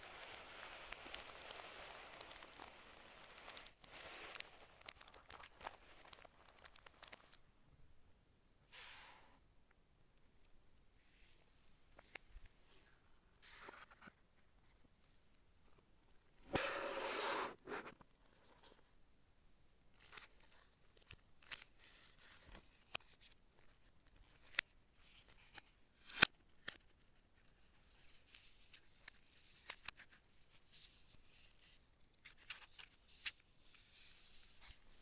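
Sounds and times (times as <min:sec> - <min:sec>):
packaging rustling and tearing: 0:00.0 - 0:07.4.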